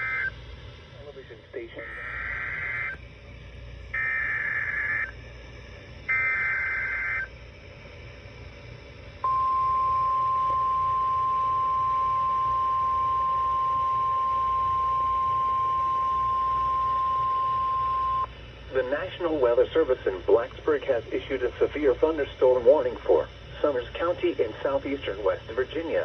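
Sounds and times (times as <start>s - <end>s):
buzzy data tone bursts: 0.0s - 26.0s.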